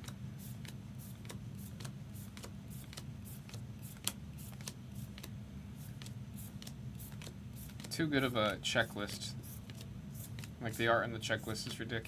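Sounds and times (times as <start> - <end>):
cards flipping with clicks: 0.0 - 8.0, 9.5 - 10.6
low steady hum: 0.0 - 12.0.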